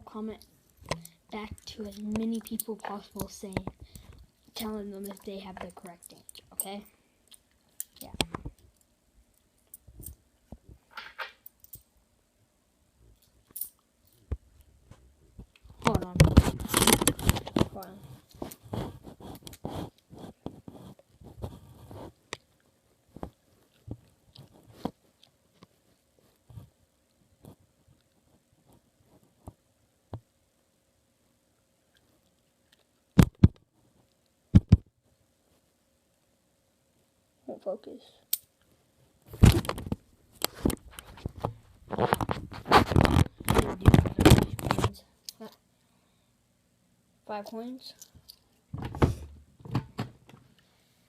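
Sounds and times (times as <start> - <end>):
scraping and rustling handling noise: 0.1 - 6.9, 14.9 - 29.6, 39.1 - 45.5.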